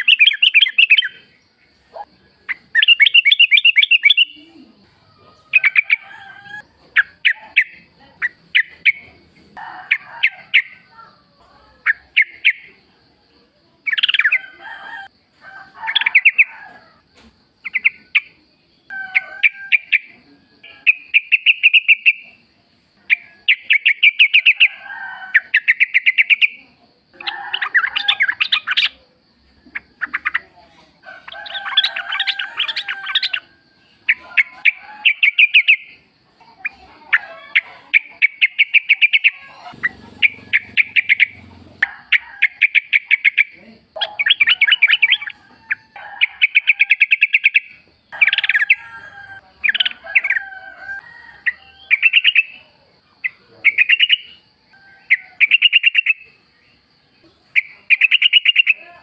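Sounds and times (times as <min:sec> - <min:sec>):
bulbuls singing bubbly chatter: 0:17.6 - 0:59.0.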